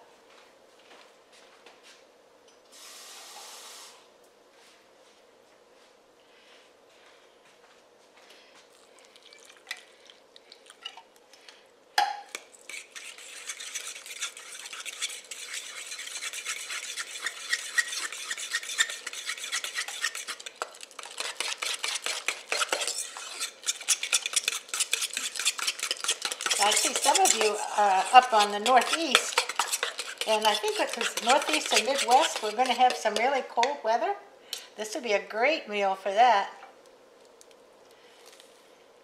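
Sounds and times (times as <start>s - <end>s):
utensil stirring thick sauce: 12.3s - 33.8s.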